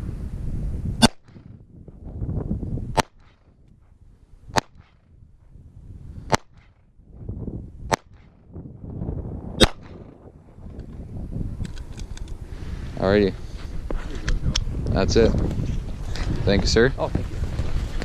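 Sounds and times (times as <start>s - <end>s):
wind noise: 0.0s - 18.0s
handgun shots: 9.6s - 10.0s.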